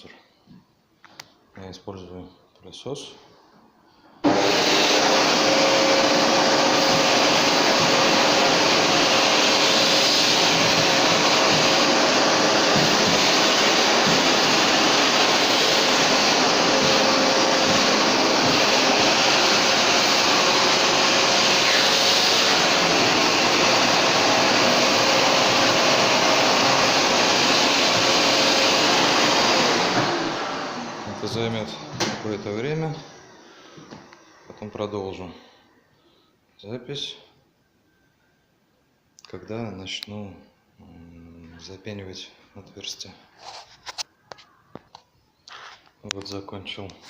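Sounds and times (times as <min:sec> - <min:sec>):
vacuum cleaner running: 0:04.2 - 0:34.7.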